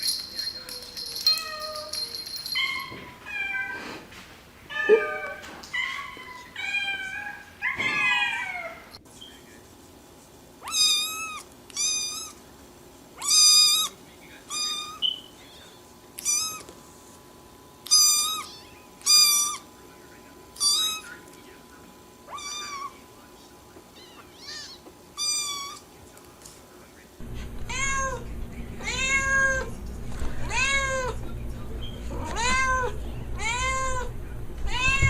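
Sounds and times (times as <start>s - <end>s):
kittens mewing: 4.7s - 9.0s, 14.5s - 15.1s, 22.3s - 23.0s, 23.9s - 25.9s.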